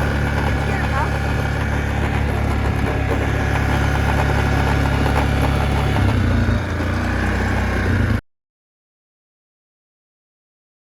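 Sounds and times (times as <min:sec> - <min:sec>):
atv engine idling: 0:00.0 - 0:08.2.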